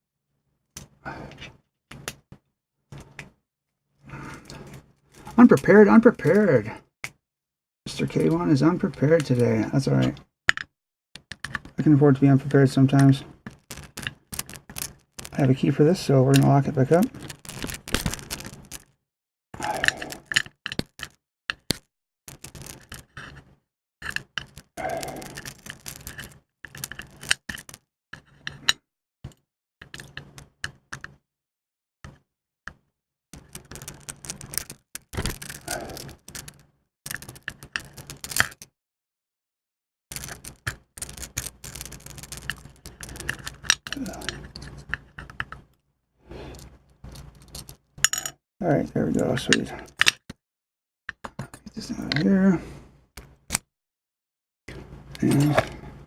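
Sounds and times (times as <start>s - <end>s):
key scraping in cylinder: 33.4s - 38.6s, 40.1s - 45.6s, 46.4s - 48.2s.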